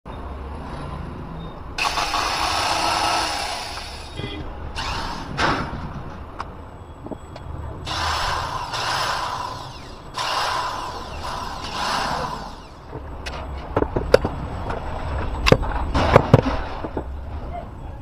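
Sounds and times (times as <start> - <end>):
rasping strokes on metal parts: 7.9 - 12.9.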